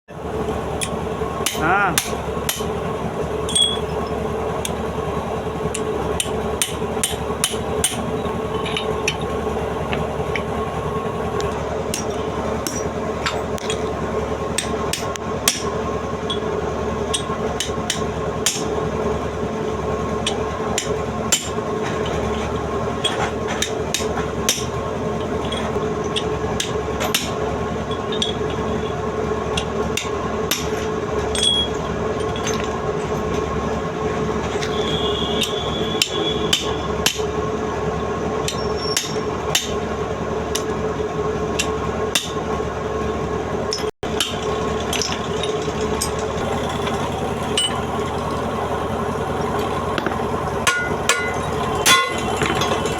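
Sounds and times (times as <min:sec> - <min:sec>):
steady mechanical hum: 0:00.1 - 0:52.9
hammer blows: 0:46.0 - 0:52.9.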